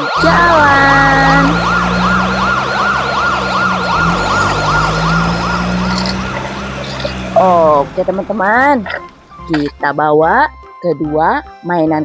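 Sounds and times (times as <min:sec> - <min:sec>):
police siren wailing: 0:00.0 - 0:09.9
low engine drone: 0:00.0 - 0:10.4.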